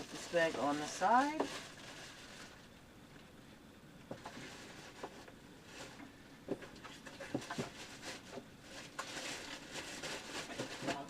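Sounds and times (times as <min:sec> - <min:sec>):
plastic bag crinkling: 0:00.0 - 0:02.8, 0:06.8 - 0:11.0.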